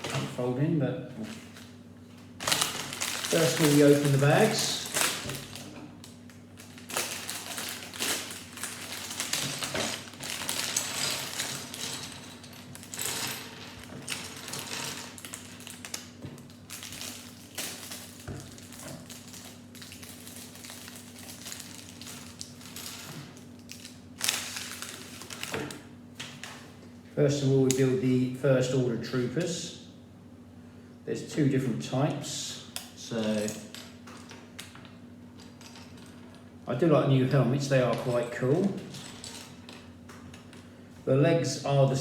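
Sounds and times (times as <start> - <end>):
plastic bags tearing and crinkling: 2.4 - 26.6.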